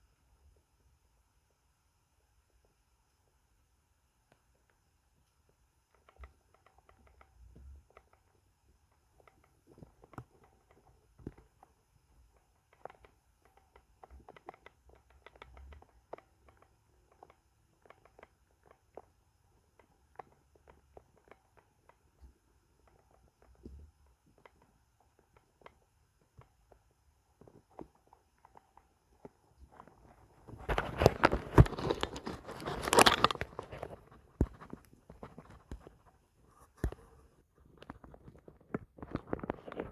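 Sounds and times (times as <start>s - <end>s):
faint clicks and ticks: 4.2s - 39.9s
close rustling and crunching: 29.8s - 37.2s.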